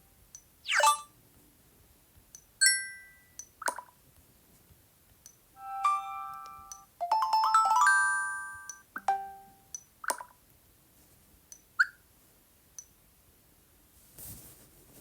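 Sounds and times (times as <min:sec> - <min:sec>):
phone notification chime: 0:05.6 - 0:09.6.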